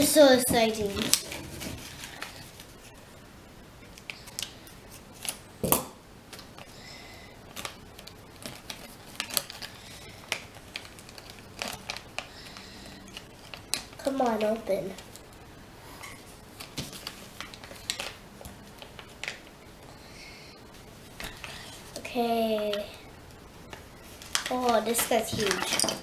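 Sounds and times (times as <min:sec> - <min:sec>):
plastic crinkling: 0:00.0 - 0:03.0, 0:07.5 - 0:15.4, 0:16.4 - 0:19.5, 0:23.7 - 0:26.0.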